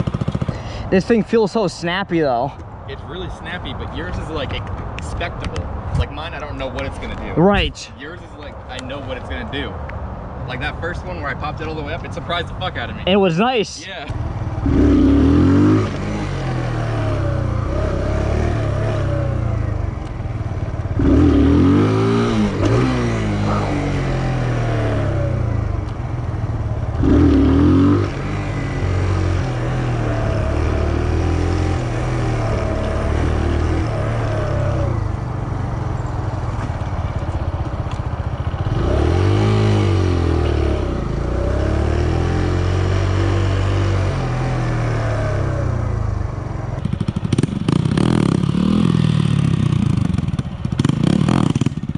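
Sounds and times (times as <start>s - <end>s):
motorcycle engine revving: 0.0s - 0.8s, 13.9s - 51.9s.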